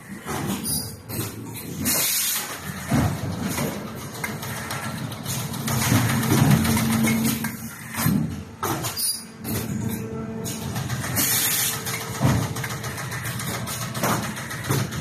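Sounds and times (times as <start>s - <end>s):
machine humming: 2.6s - 8.7s, 9.3s - 15.0s.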